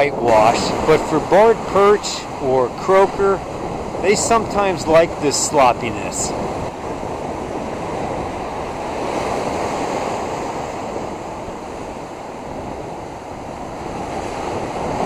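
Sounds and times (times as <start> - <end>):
waves breaking: 0.0 - 15.0
wind on microphone: 0.0 - 15.0.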